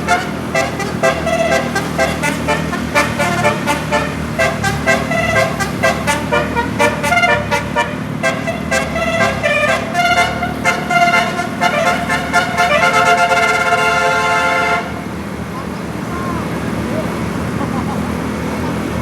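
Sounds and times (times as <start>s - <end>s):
musical air horn playing a tune: 0.0s - 15.1s
bus engine rumble: 0.0s - 19.0s.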